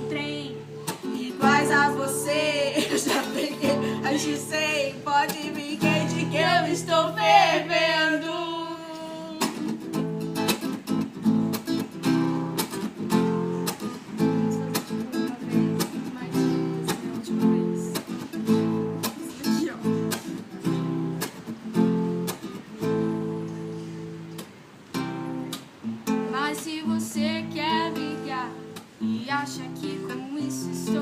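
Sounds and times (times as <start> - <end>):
person singing: 0.0 - 9.8, 26.4 - 31.0
acoustic guitar strumming: 0.0 - 31.0.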